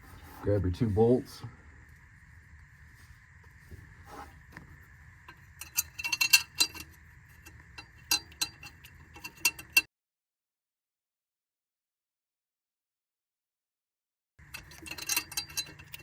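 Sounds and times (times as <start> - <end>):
metallic clicks of bolts: 5.3 - 9.8, 14.4 - 16.0.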